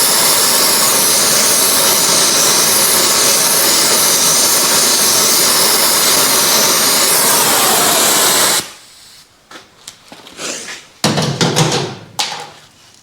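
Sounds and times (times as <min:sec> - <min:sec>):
gas torch flame hissing: 0:00.0 - 0:09.3.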